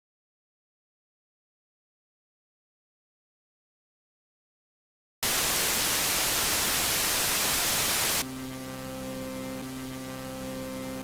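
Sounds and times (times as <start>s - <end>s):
electrical hum: 5.2s - 8.2s
white noise static: 5.2s - 8.2s.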